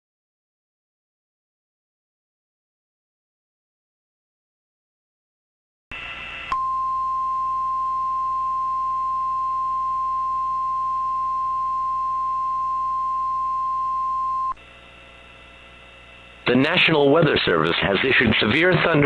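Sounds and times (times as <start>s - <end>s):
faint hum: 5.9s - 19.0s.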